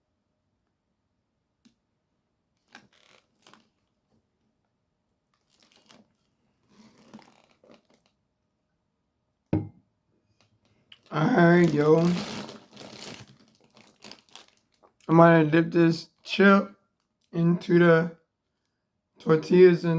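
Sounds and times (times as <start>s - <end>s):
food wrappers crinkling: 2.6s - 3.9s, 5.3s - 8.2s, 10.4s - 15.1s.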